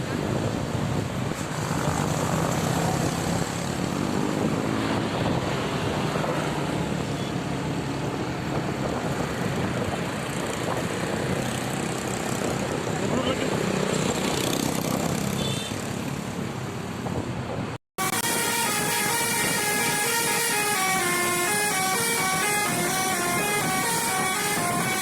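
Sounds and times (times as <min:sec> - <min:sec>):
bus engine droning: 0:16.3 - 0:25.0.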